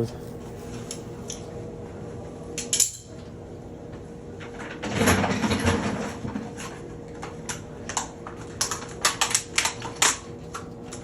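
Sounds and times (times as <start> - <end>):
faint steady hum: 0.0 - 5.1.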